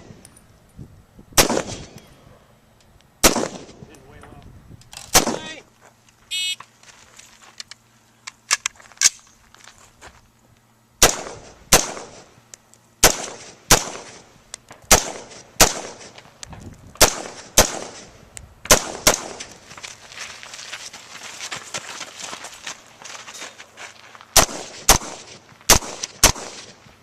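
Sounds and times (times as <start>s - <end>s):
faint gunshots: 1.4s - 2.0s, 3.2s - 4.0s, 5.1s - 5.6s, 11.0s - 12.3s, 13.0s - 14.2s, 14.9s - 16.2s, 17.0s - 18.1s, 18.7s - 19.6s, 24.4s - 26.9s
rifle shots with echo: 1.4s - 2.0s, 3.2s - 3.9s, 5.1s - 5.6s, 11.0s - 12.3s, 13.0s - 14.2s, 14.9s - 16.1s, 17.0s - 19.6s, 24.4s - 26.8s.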